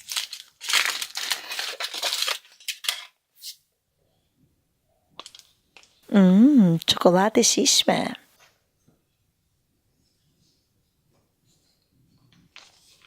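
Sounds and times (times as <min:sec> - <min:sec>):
foil wrapper crinkling and tearing: 0:00.0 - 0:03.0.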